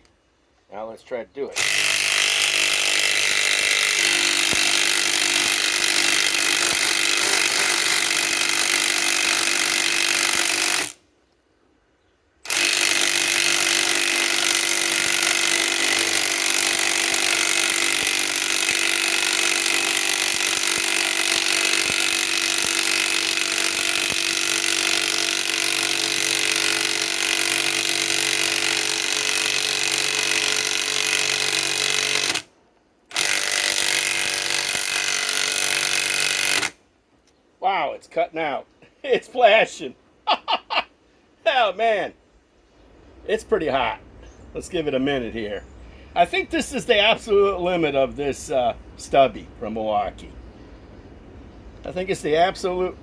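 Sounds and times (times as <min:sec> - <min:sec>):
impact wrench hammering: 0:01.6 - 0:11.0, 0:12.5 - 0:32.5.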